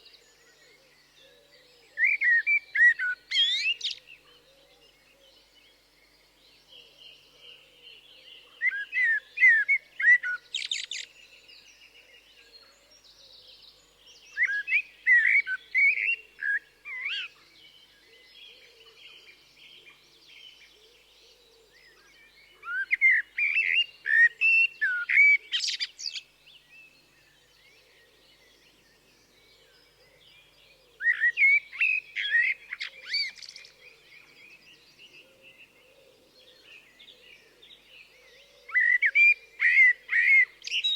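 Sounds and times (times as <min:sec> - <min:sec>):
blackbird singing: 0:00.0 - 0:40.9
other birds calling faintly: 0:00.0 - 0:40.9.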